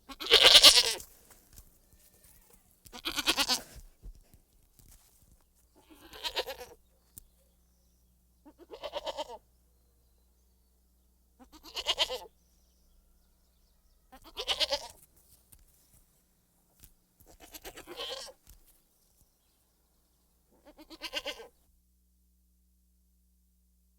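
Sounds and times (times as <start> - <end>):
goat bleating: 0.1 - 1.0, 2.0 - 3.8, 5.8 - 6.8, 8.4 - 9.4, 11.4 - 12.3, 14.1 - 15.0, 17.3 - 18.4, 20.6 - 21.6
faint low hum: 3.8 - 23.9.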